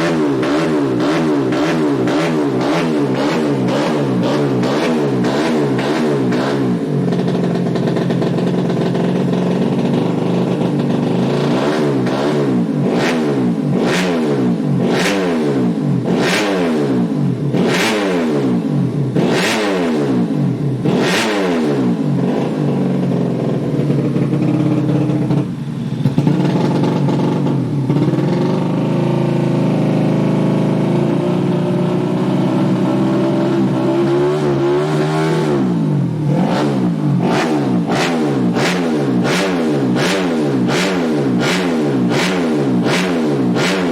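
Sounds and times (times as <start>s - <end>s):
exhaust crack: 0.0s - 13.0s, 21.9s - 28.8s
motorcycle engine revving: 0.0s - 43.9s.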